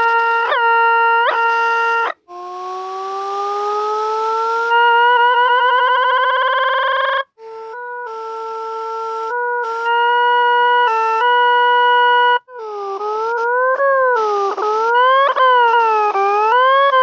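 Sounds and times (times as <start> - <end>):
buzzy warbling synth tone: 0.0 - 17.0.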